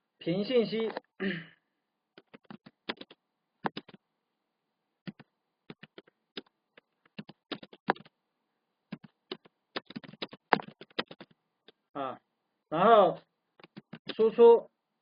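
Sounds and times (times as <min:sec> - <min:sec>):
typing on computer keyboard: 0:02.2 - 0:04.0, 0:05.0 - 0:08.1, 0:08.9 - 0:11.4, 0:13.6 - 0:14.2.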